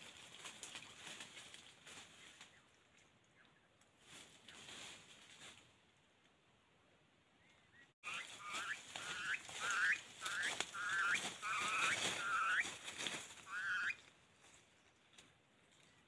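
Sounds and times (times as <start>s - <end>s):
bird calling: 7.4s - 14.1s.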